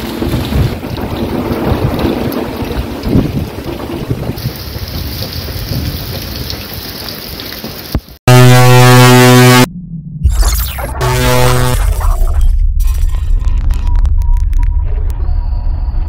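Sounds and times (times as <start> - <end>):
wind buffeting microphone: 0.0 - 6.8
loud horn-like buzz: 8.3 - 9.7, 10.9 - 11.9.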